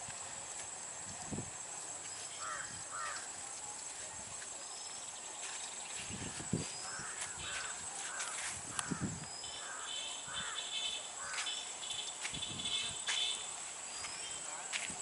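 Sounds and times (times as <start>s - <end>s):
bird cawing: 2.4s - 3.3s, 6.8s - 11.6s
high-pitched insect drone: 4.7s - 14.4s.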